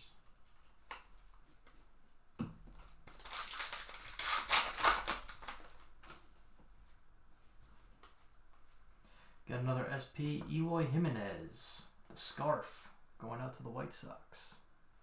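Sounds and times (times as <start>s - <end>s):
crinkling wrapper rustle: 2.8s - 6.3s.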